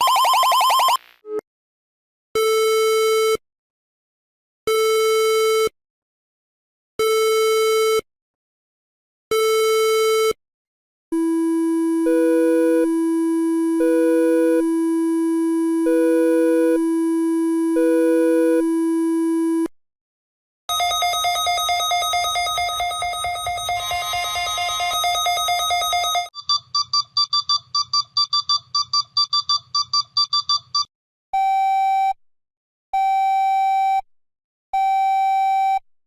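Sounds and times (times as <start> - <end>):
long steady low tone: 11.2 - 19.7
electronic alarm beeps: 20.7 - 32.1
ringing tone: 20.8 - 26.3.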